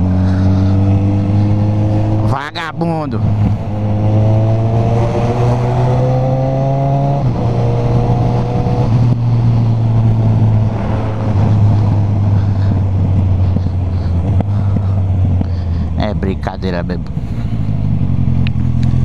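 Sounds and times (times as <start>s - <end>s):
motorcycle engine accelerating: 0.0s - 19.0s
wind rushing over helmet: 3.2s - 15.4s.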